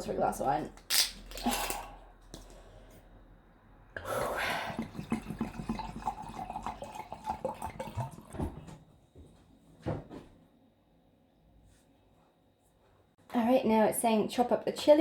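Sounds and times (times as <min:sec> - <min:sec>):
wine glugging into a glass: 0:04.2 - 0:08.6.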